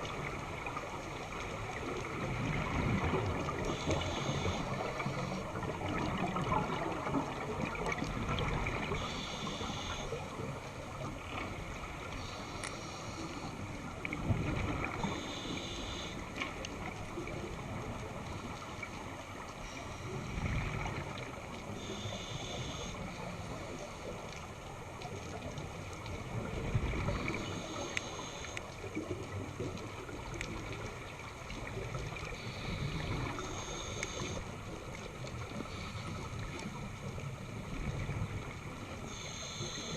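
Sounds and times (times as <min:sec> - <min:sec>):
underwater noise: 0:00.0 - 0:39.9
gurgle of exhaled bubbles: 0:01.8 - 0:09.0
regulator inhale hiss: 0:03.6 - 0:05.6, 0:08.9 - 0:10.2, 0:12.1 - 0:13.7, 0:15.0 - 0:16.4, 0:21.8 - 0:24.0, 0:27.1 - 0:28.7, 0:32.4 - 0:34.5, 0:39.1 - 0:39.9.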